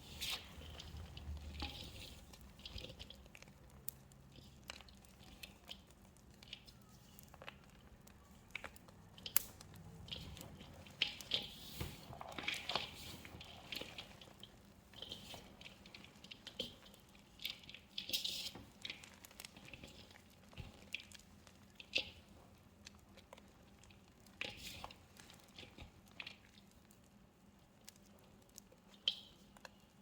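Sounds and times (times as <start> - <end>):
wet paste squelching: 0.0 - 22.4.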